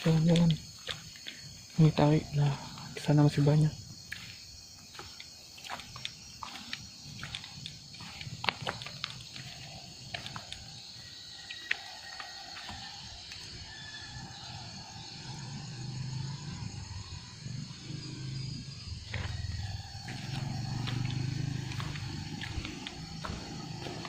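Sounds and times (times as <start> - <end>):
insects chirring: 0.0 - 24.0
footsteps snapping: 5.0 - 10.7, 20.0 - 24.0.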